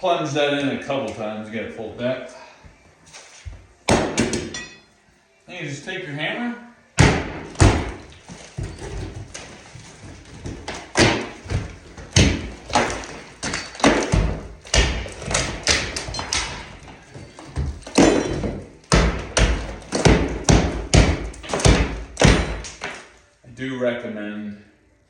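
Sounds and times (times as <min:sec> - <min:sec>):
hammer thuds on plaster: 0:03.9 - 0:04.6, 0:07.0 - 0:09.6, 0:10.3 - 0:23.1
debris crumbling: 0:07.5 - 0:23.1.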